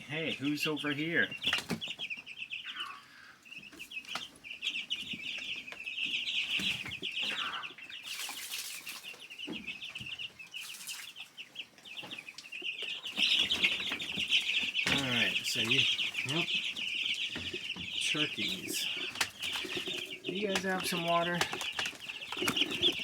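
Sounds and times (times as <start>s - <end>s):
chicks peeping: 0.0s - 23.0s.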